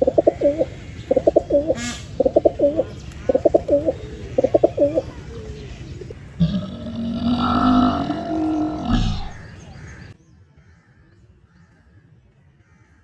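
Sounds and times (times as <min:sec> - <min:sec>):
pigeon cooing: 0:00.0 - 0:09.5.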